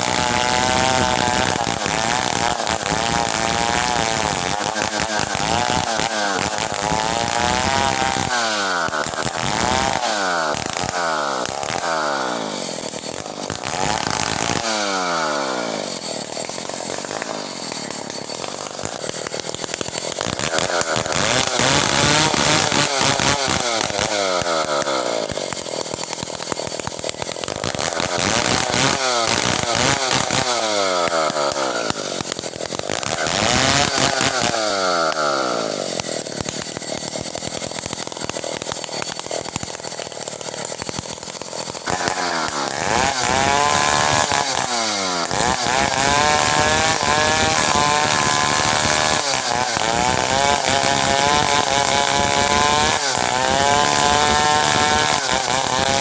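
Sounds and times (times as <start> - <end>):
chainsaw cutting hardwood: 0.0 - 56.0.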